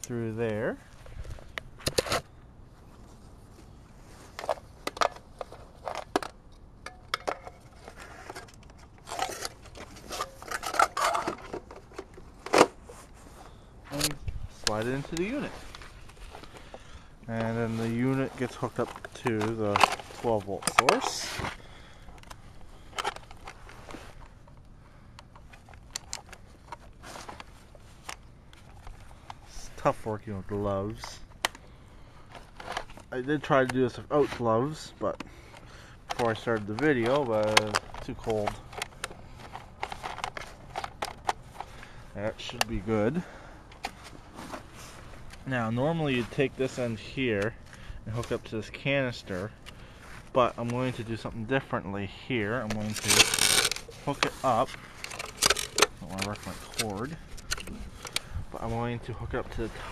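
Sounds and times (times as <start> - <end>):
gloved hands rustling and scraping: 2.6 - 6.5, 7.4 - 59.9
plastic parts clicking: 18.8 - 21.5, 35.2 - 41.7, 52.7 - 58.3.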